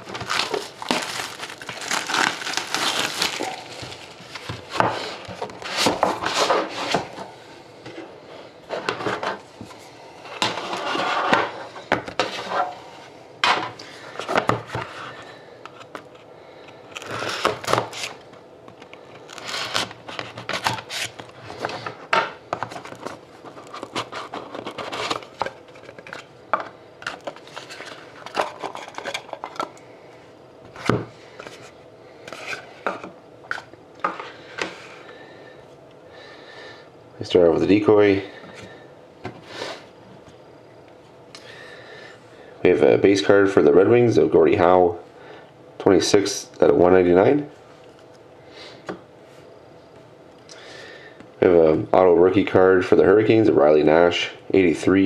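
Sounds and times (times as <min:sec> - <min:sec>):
cardboard and wrapping rustling: 0:00.0 - 0:07.2, 0:22.6 - 0:26.3.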